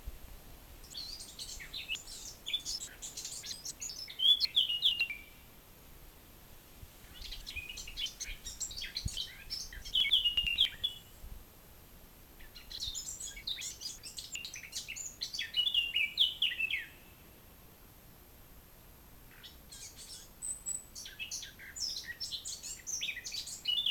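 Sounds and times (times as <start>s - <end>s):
bird singing: 0.8s - 5.4s, 7.1s - 11.2s, 12.4s - 17.2s, 19.3s - 23.9s.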